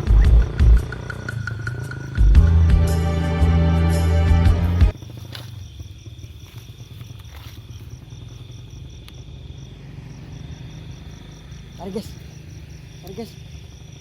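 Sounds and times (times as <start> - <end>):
music: 0.0 - 5.0
crickets chirping: 0.0 - 14.0.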